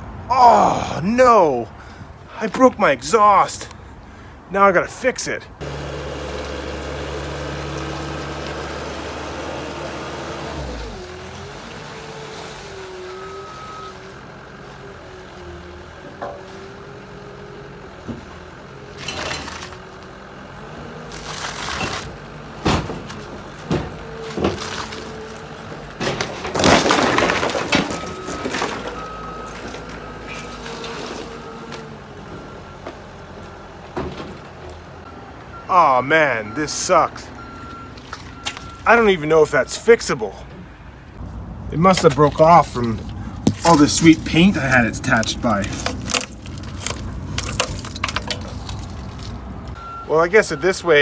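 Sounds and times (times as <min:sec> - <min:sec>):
heavy machine engine running: 0:05.6 - 0:16.0
car parts crunching and cracking: 0:18.1 - 0:32.4, 0:36.6 - 0:49.8.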